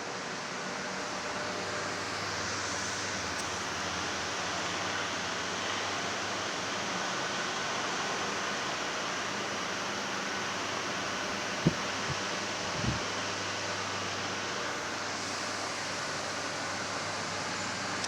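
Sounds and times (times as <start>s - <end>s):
fan air rushing: 10.2s - 15.4s
faint low motor hum: 10.8s - 13.2s.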